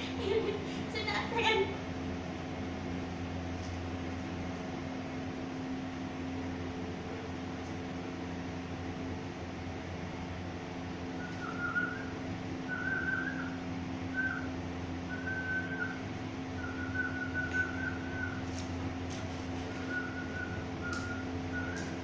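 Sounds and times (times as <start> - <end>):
steady mechanical hum: 0.0 - 22.0
short whistled notes: 19.8 - 22.0.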